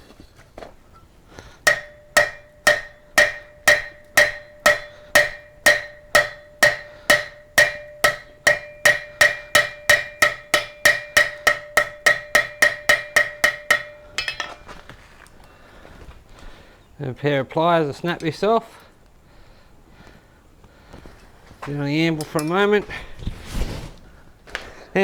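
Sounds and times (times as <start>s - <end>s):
hammer striking steel on anvil: 1.6s - 14.8s.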